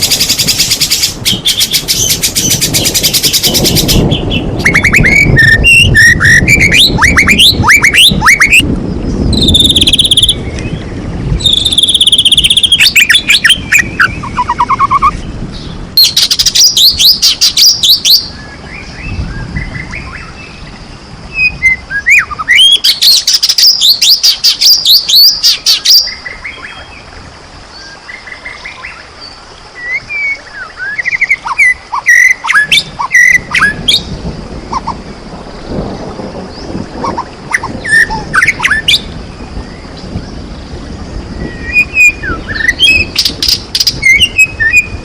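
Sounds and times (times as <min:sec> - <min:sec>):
shama singing whistles and trills: 0:00.0 - 0:10.8, 0:11.4 - 0:15.2, 0:21.3 - 0:26.8, 0:29.8 - 0:34.1, 0:37.1 - 0:39.1, 0:41.4 - 0:45.0.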